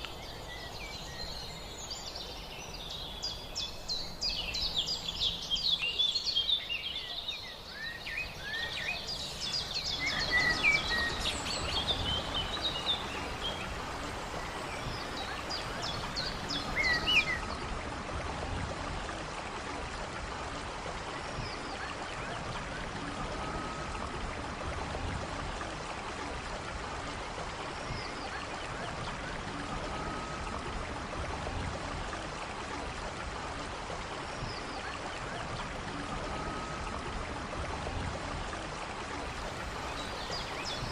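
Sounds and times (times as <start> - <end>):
songbirds chirping and singing: 0.0 - 17.7, 39.4 - 40.9
stream running water: 0.0 - 40.9.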